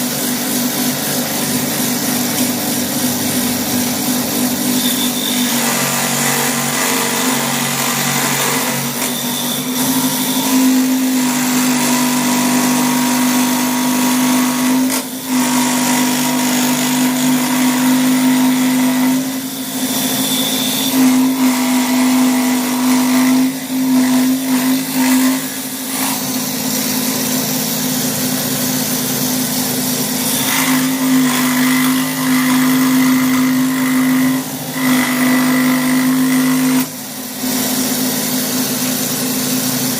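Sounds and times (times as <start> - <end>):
die grinder whining on wood: 0.0 - 39.9.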